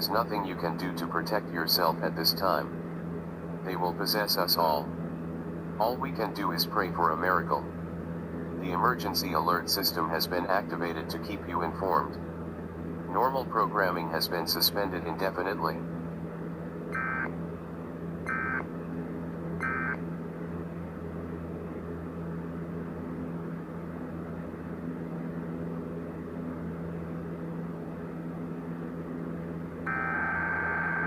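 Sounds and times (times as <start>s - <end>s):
steady low electronic hum: 0.0s - 31.0s
digital data bursts: 17.0s - 17.3s, 19.6s - 20.0s.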